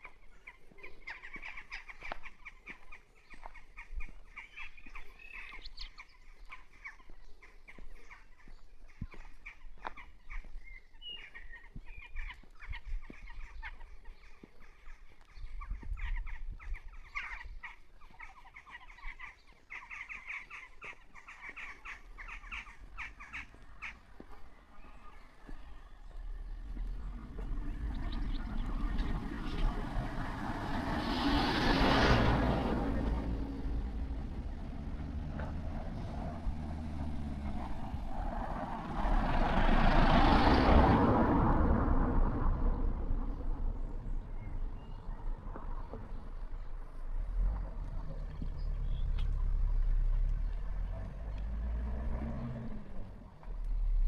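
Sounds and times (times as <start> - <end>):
birds calling harshly: 0.0 - 41.2
vehicle passing by: 21.5 - 54.0
low rumble: 26.0 - 54.0.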